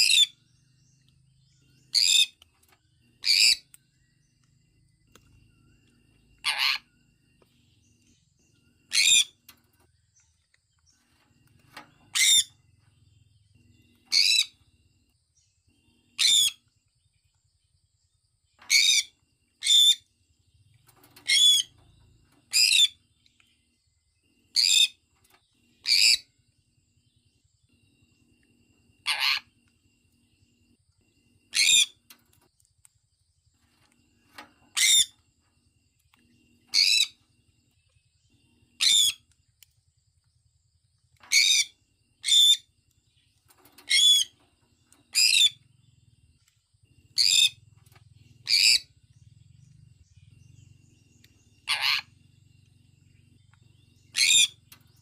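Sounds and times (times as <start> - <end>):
parrot shrill calls: 6.4 - 6.9, 8.9 - 9.3, 29.0 - 29.5, 31.5 - 32.0, 38.8 - 39.2, 51.6 - 52.1, 54.1 - 54.6.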